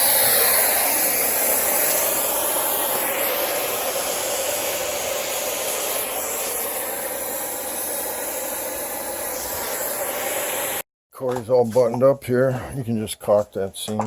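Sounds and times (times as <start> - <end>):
nitrogen flowing through line: 0.0 - 10.8
torch flame hissing: 0.0 - 10.9.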